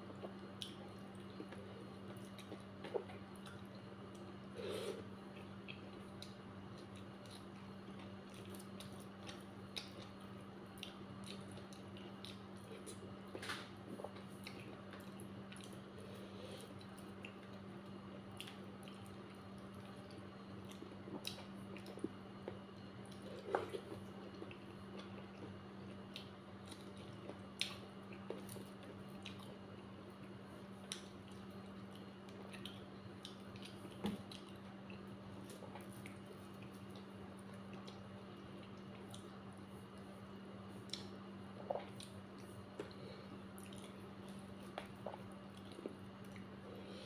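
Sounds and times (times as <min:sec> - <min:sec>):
steady low hum: 0:00.0 - 0:47.0
wet chewing: 0:30.2 - 0:47.0.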